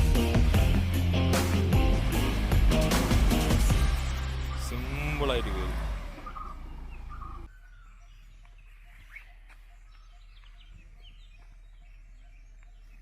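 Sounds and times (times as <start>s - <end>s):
small birds chirping: 2.9s - 13.0s.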